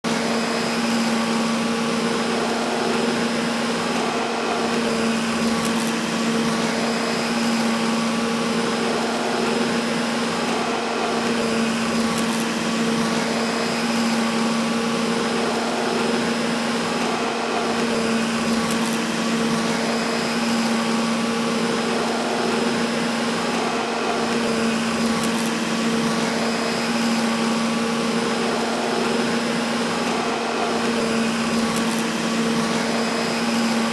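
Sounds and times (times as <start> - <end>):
vacuum cleaner running: 0.0 - 33.9.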